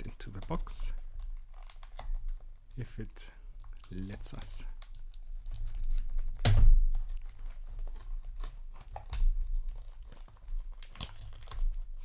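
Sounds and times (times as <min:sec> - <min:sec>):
cardboard packaging tearing: 0:03.9 - 0:12.0.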